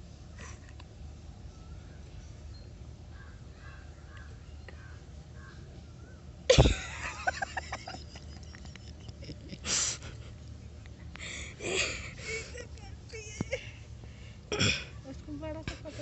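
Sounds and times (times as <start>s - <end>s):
breathy bursts of breath: 9.6s - 10.3s, 11.2s - 12.4s.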